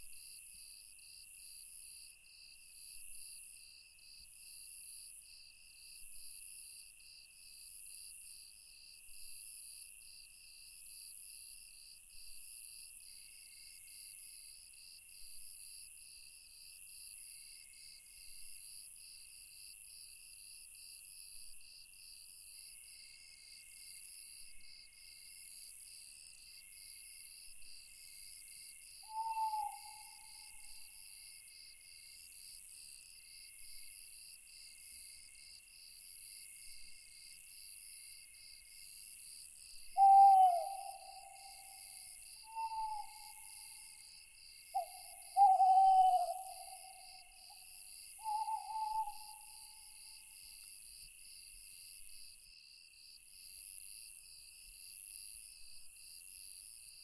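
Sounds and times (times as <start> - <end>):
crickets chirping: 22.9 - 51.4
short owl-like hoot: 29.1 - 30.4, 40.0 - 41.8, 42.5 - 43.6, 44.8 - 47.1, 48.2 - 49.3.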